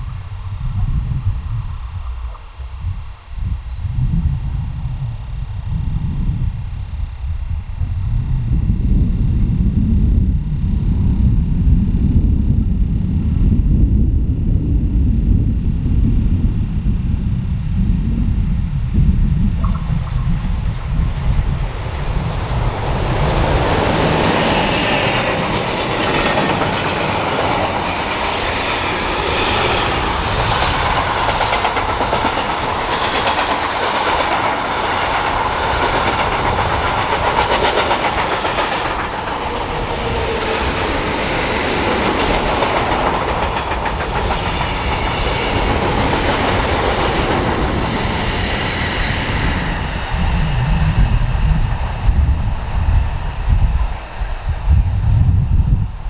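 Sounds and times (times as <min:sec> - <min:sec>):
train wheels on rails: 0:19.6 - 0:56.0.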